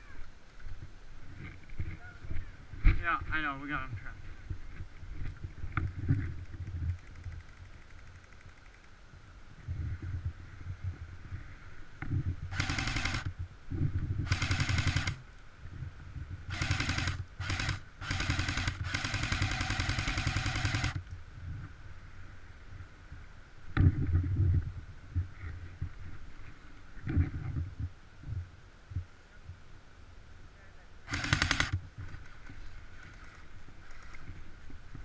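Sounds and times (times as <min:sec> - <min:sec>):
wind rumble on microphone: 0:00.0 - 0:18.1, 0:20.4 - 0:35.0
airsoft gun firing bursts: 0:12.5 - 0:13.3, 0:14.2 - 0:15.2, 0:16.5 - 0:21.0, 0:31.1 - 0:31.8.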